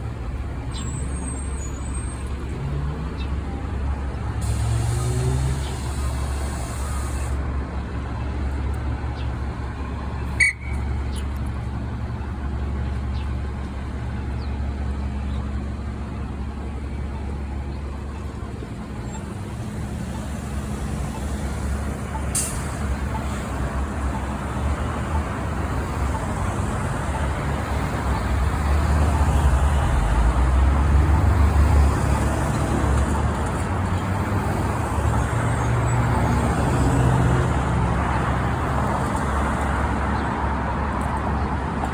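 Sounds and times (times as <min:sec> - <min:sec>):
bus engine droning: 0:00.0 - 0:41.9
road noise: 0:00.0 - 0:41.9
air hiss: 0:04.4 - 0:07.4.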